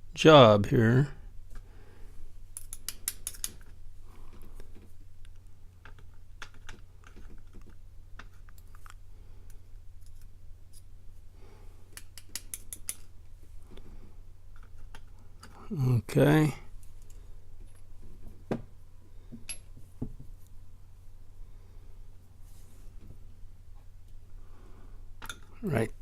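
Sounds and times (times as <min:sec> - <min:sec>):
small metallic clicks: 0:02.6 - 0:03.8, 0:11.9 - 0:13.1.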